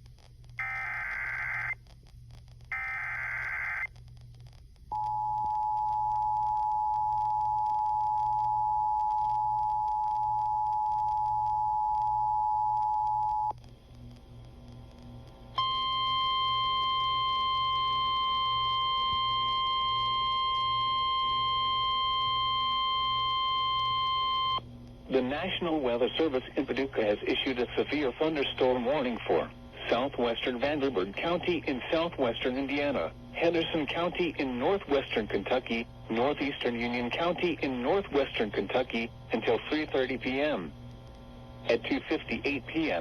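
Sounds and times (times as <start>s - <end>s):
buzzy data bursts: 0.0s - 4.6s, 24.6s - 40.8s
steady alarm tone: 15.6s - 24.6s.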